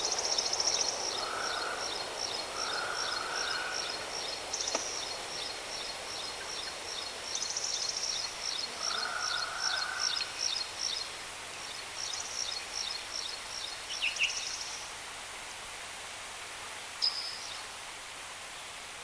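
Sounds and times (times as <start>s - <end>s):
birds chirping: 0.0s - 10.2s
steady outdoor hiss: 0.0s - 19.0s.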